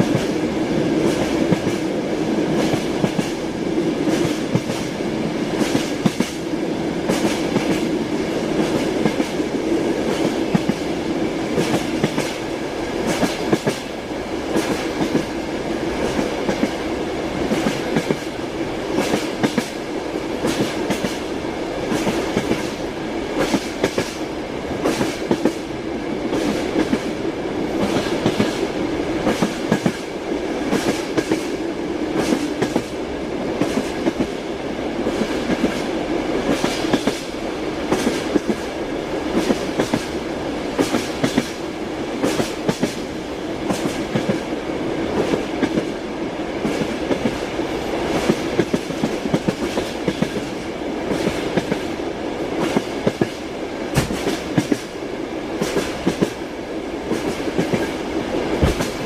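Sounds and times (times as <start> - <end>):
train rumbling on track: 0.0 - 59.0
wheels clickety-clack: 11.6 - 12.4, 48.1 - 51.9, 54.0 - 54.9.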